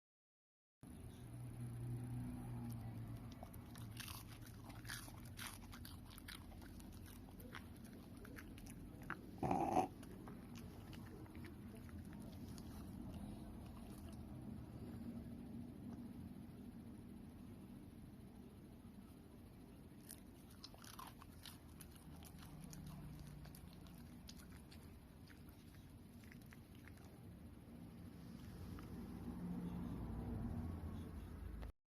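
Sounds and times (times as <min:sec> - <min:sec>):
dog chewing bread: 0:03.2 - 0:14.2, 0:20.0 - 0:27.2
dog burping: 0:09.0 - 0:10.3.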